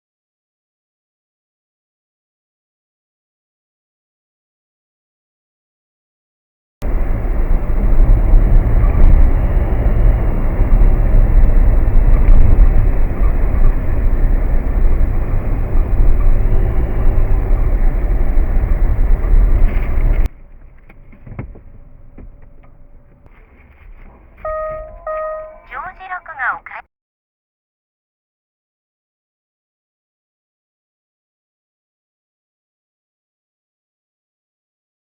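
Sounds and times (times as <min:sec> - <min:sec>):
road and wind noise in car: 0:06.8 - 0:26.7.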